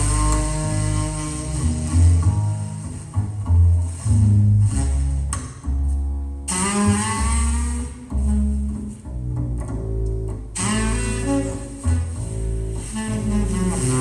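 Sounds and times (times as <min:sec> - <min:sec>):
music with bass and strings: 0:00.0 - 0:14.0.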